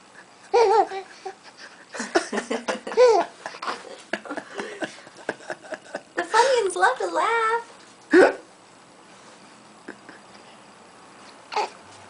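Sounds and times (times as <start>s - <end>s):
baby laughing: 0.5s - 1.4s, 2.8s - 3.8s.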